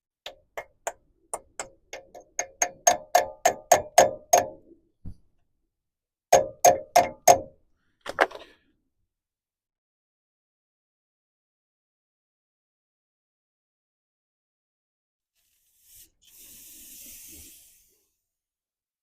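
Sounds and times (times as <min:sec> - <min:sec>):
hammer tapping metal: 0:00.3 - 0:04.6, 0:06.4 - 0:07.5.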